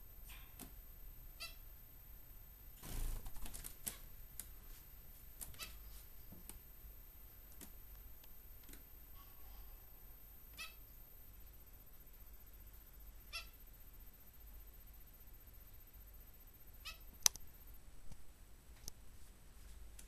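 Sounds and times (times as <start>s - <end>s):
finches chirping: 16.8s - 17.2s.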